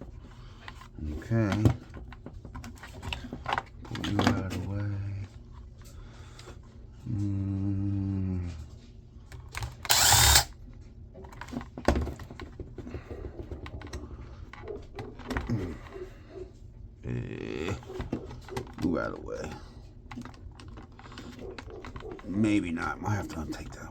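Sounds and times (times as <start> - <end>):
plastic parts clicking and rattling: 0.6 - 4.7, 17.9 - 22.4
power drill running: 9.8 - 10.5
loud rasping burst: 9.9 - 10.5.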